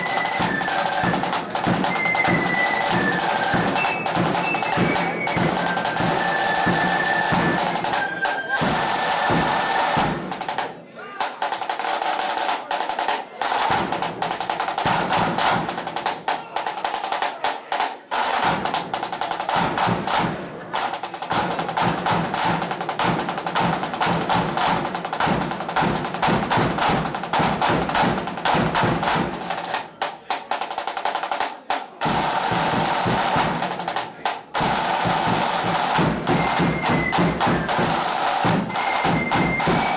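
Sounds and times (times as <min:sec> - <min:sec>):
flute band playing: 0:00.0 - 0:10.7, 0:32.1 - 0:39.9
snare drum rolls: 0:00.0 - 0:39.9.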